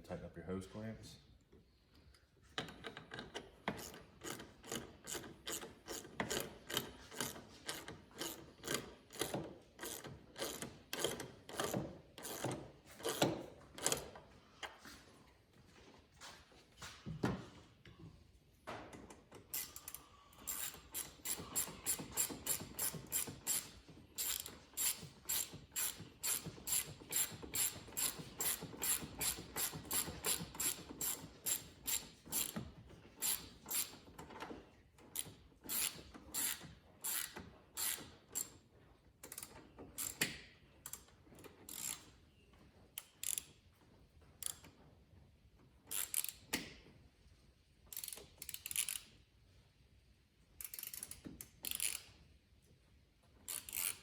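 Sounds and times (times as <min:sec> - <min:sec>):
socket ratchet clicking: 0:02.6 - 0:14.1, 0:19.5 - 0:32.6, 0:33.2 - 0:34.0, 0:35.1 - 0:38.5, 0:39.2 - 0:41.1, 0:45.9 - 0:46.7, 0:47.9 - 0:49.1, 0:50.6 - 0:52.1, 0:53.5 - 0:54.0.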